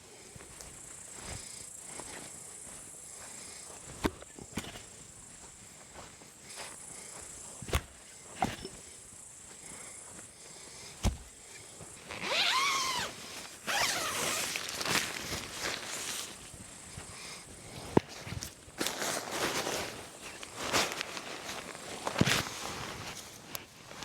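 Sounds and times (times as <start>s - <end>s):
rustling and scraping: 7.4s - 8.9s, 10.9s - 17.1s, 17.7s - 24.0s.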